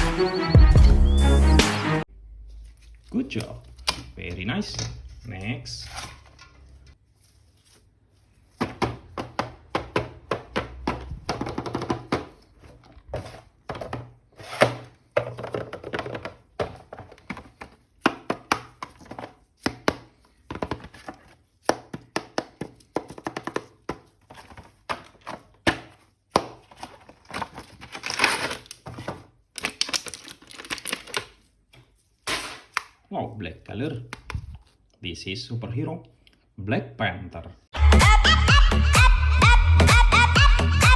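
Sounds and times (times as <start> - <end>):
background music: 0.0 - 2.1, 37.8 - 40.9
plastic toy knocks and clicks: 8.7 - 12.3.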